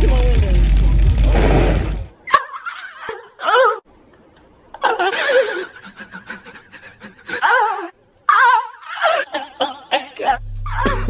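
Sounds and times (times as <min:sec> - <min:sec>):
people laughing: 0:04.7 - 0:11.0.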